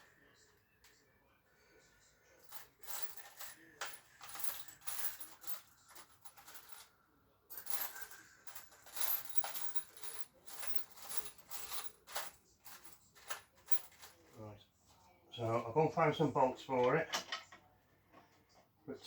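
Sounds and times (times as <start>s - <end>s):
small metal parts clinking: 2.4s - 6.9s, 7.5s - 14.3s.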